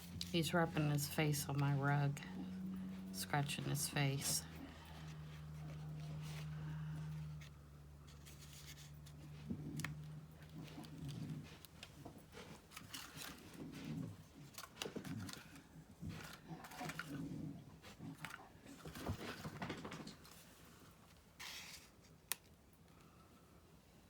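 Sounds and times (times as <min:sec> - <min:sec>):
low steady hum: 0:00.0 - 0:24.0
paper rustling: 0:03.7 - 0:17.2, 0:18.2 - 0:22.5.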